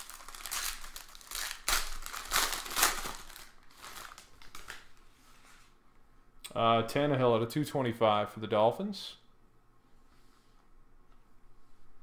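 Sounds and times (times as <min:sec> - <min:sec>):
card pack wrapper crinkling: 0:00.0 - 0:05.0.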